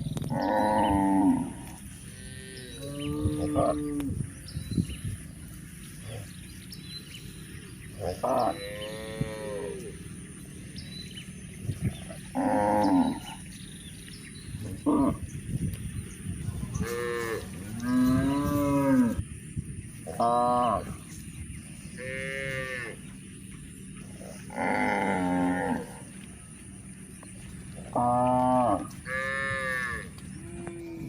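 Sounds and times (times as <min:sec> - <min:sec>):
cattle mooing: 0:00.3 - 0:04.2, 0:08.0 - 0:10.0, 0:12.3 - 0:13.4, 0:16.7 - 0:19.2, 0:22.0 - 0:23.0, 0:24.2 - 0:26.1, 0:27.8 - 0:31.0.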